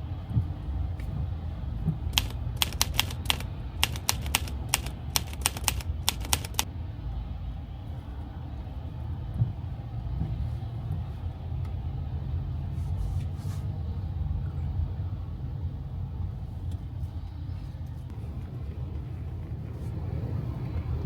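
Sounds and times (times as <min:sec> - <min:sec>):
steady low rumble: 0:00.0 - 0:21.0
faint clicks: 0:01.9 - 0:06.7.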